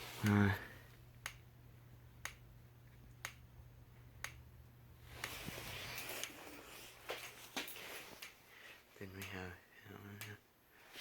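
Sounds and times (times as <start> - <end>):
low steady hum: 0.0 - 11.0
fire alarm strobes ticking: 1.1 - 5.4
rustling handling noise: 5.1 - 9.0.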